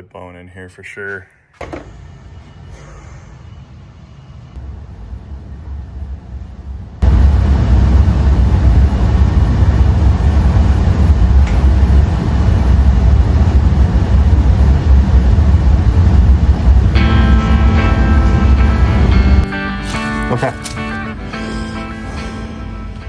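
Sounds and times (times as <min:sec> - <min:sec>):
wind buffeting microphone: 0:04.7 - 0:19.5.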